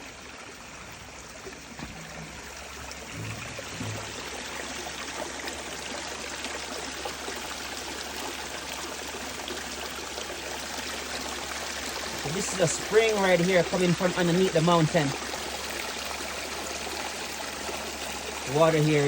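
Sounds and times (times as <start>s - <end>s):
spring water trickling: 0.0s - 19.0s
soft low knocks: 0.9s - 5.2s.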